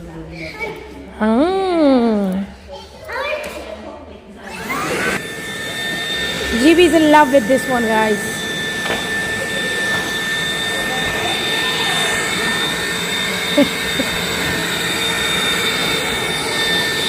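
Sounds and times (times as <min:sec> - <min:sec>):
vacuum cleaner motor whine: 0:04.4 - 0:17.0.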